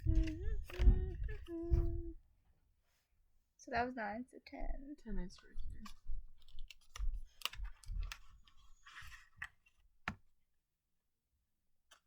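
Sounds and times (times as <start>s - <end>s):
handling clicks and taps: 5.4s - 8.6s.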